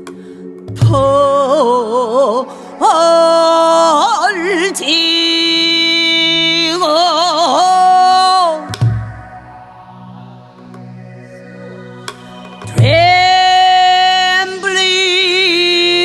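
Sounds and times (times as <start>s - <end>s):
low drone: 0.0s - 16.0s
woman singing with vibrato: 0.8s - 8.8s, 12.8s - 16.0s.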